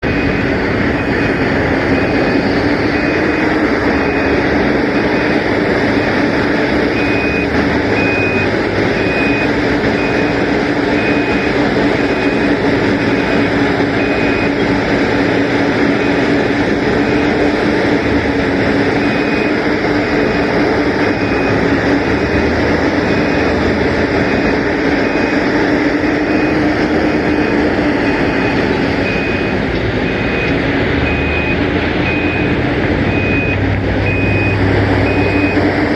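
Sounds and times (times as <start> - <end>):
backup alarm beeping: 0.0 - 35.8
heavy diesel machinery droning: 0.0 - 35.9.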